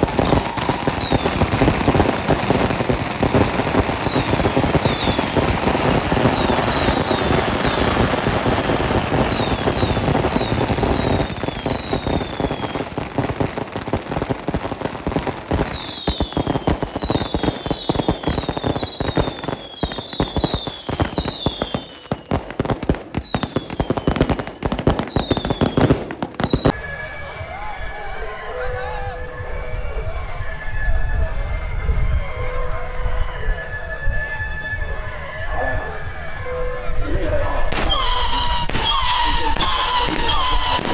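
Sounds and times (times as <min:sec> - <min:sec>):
falling firework whistles: 0:00.0 - 0:26.8, 0:37.7 - 0:40.9
fireworks crackling and popping: 0:00.0 - 0:26.8, 0:37.7 - 0:40.9.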